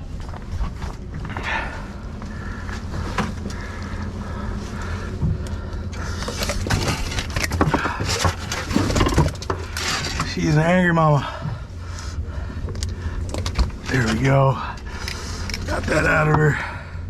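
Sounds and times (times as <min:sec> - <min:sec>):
boat engine idling: 0:00.0 - 0:17.0
fish thrashing on deck: 0:06.0 - 0:10.3.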